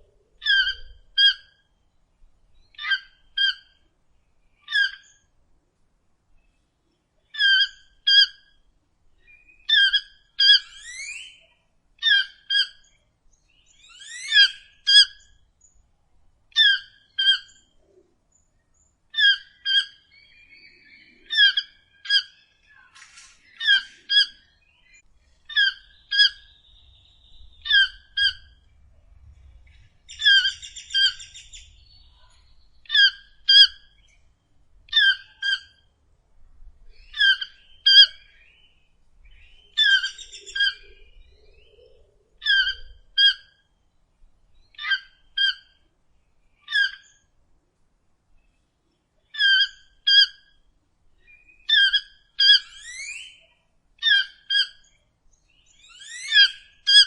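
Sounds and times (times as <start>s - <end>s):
toucan calling: 0.0s - 1.7s, 2.7s - 3.9s, 4.6s - 5.3s, 7.3s - 8.6s, 9.2s - 13.0s, 13.6s - 15.4s, 16.5s - 18.0s, 19.1s - 28.8s, 29.6s - 34.2s, 34.9s - 35.9s, 36.9s - 38.6s, 39.3s - 43.8s, 44.7s - 45.9s, 46.6s - 47.3s, 49.2s - 55.0s, 55.6s - 57.0s
birds whistling and chirping: 0.4s - 1.8s, 9.2s - 15.8s, 16.6s - 28.8s, 29.4s - 35.8s, 36.9s - 45.7s, 51.2s - 57.0s.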